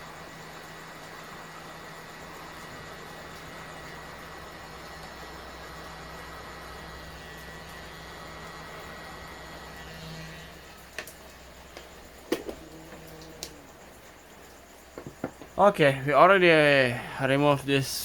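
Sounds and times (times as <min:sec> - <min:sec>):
low steady hum: 0:00.0 - 0:18.0
hot-air station blowing: 0:05.6 - 0:14.4.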